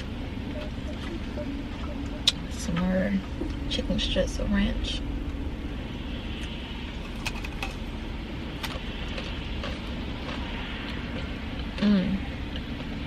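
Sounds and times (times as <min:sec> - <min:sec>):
car engine idling: 0:00.0 - 0:12.0
eating clicks and crunches: 0:07.1 - 0:07.9, 0:08.5 - 0:13.0.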